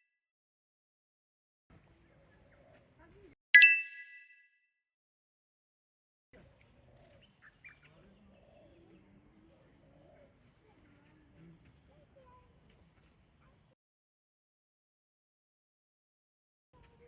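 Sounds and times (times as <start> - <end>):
short bird chirps: 3.6 - 4.3
insects trilling: 6.4 - 13.8.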